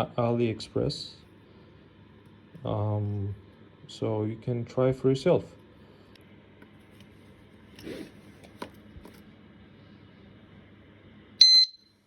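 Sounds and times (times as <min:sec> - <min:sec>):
short high-pitched beep: 0:11.4 - 0:11.9.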